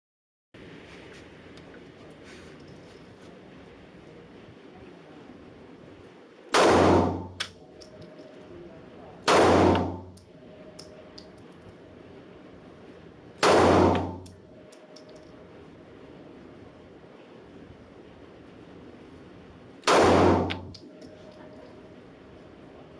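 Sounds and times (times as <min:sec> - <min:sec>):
pistol shots: 0:06.6 - 0:07.4, 0:09.3 - 0:10.1, 0:13.4 - 0:14.3, 0:19.8 - 0:20.7
light metallic clinks: 0:07.4 - 0:08.7, 0:10.2 - 0:11.9, 0:14.2 - 0:15.4, 0:20.5 - 0:22.1.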